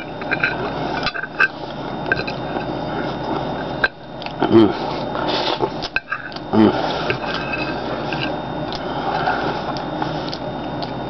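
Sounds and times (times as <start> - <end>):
person humming: 4.4 - 5.0, 6.5 - 7.0.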